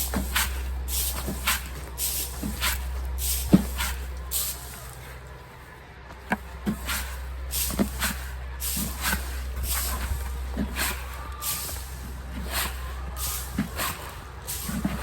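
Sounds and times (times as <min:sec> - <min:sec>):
footsteps crunching: 0:00.0 - 0:15.0
steady low hum: 0:00.0 - 0:15.0.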